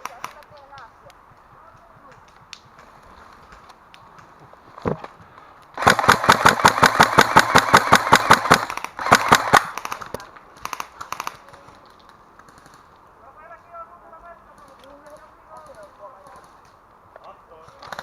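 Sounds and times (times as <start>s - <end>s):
airsoft gun firing full auto: 5.8s - 11.4s.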